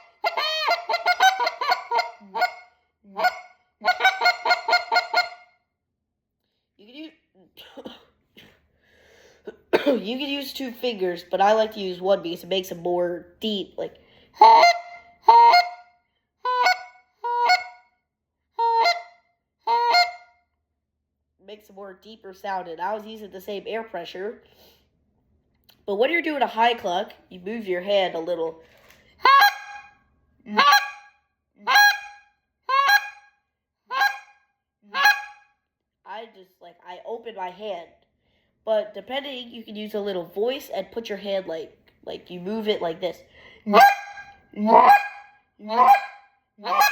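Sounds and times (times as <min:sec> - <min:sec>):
goose call honks: 0:00.0 - 0:05.5, 0:14.4 - 0:15.8, 0:30.5 - 0:31.0, 0:34.9 - 0:35.4, 0:43.7 - 0:46.9.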